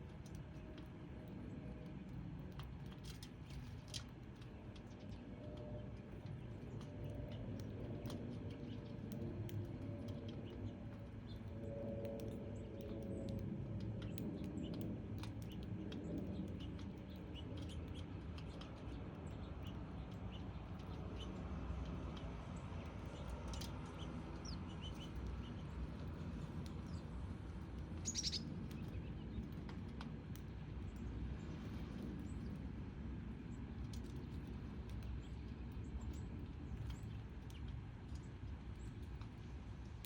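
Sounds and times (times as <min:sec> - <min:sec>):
low background rumble: 0:00.0 - 0:40.0
sparrows chirping: 0:22.8 - 0:29.5.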